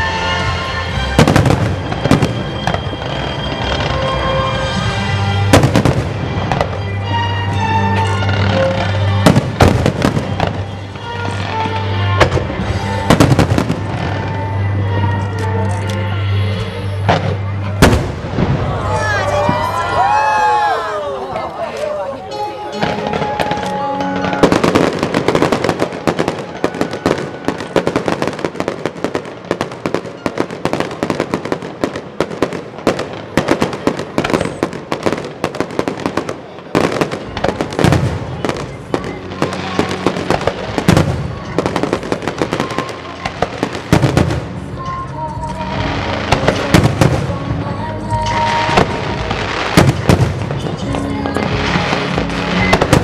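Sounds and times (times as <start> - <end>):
fireworks crackling and popping: 1.0 - 20.8, 21.4 - 53.0
deep firework booms: 17.0 - 18.7, 48.7 - 53.0.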